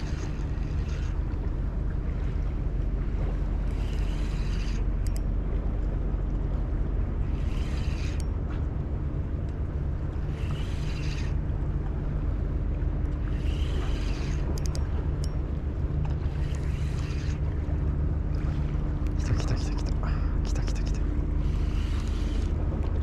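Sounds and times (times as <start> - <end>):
low engine hum: 0.0 - 23.0
light clicks: 4.0 - 5.3, 14.0 - 15.4.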